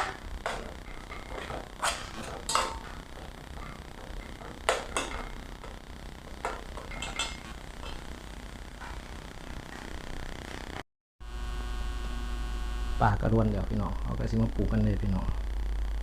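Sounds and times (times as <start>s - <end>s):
steady low hum: 0.0s - 16.0s
dishes and utensils clinking: 0.5s - 5.4s, 6.4s - 8.0s.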